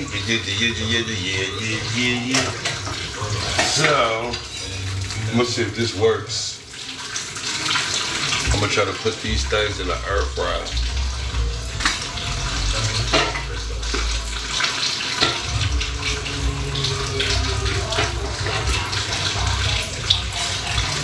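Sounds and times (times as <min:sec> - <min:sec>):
items knocking and clattering: 0:02.3 - 0:05.2, 0:09.8 - 0:21.0
low rumble: 0:09.4 - 0:14.7, 0:15.4 - 0:21.0.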